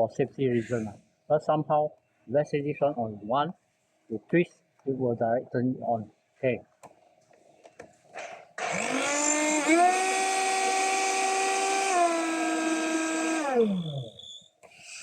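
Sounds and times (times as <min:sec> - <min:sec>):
blender motor whirring: 0:08.6 - 0:15.0.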